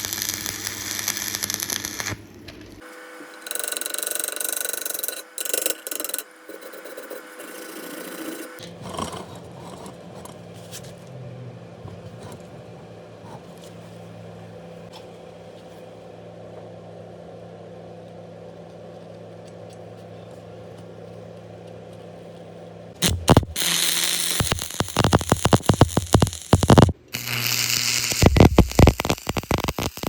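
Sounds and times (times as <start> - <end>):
welding arc crackling: 0.0 - 2.8, 3.4 - 8.6, 23.0 - 30.0
welding machine humming: 0.0 - 8.6, 23.0 - 30.0.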